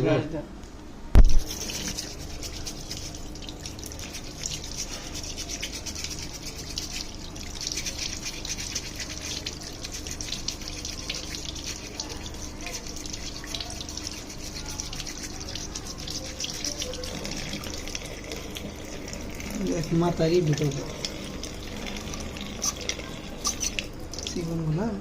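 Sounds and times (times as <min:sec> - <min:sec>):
small brush scrubbing: 0:01.2 - 0:19.1, 0:22.5 - 0:24.5.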